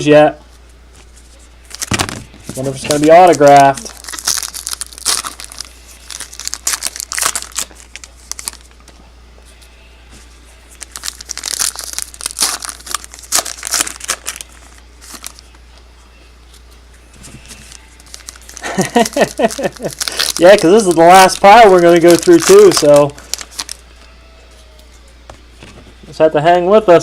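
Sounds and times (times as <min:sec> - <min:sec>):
wrappers crinkling and tearing: 0:01.6 - 0:08.8, 0:10.7 - 0:15.5, 0:17.1 - 0:23.9.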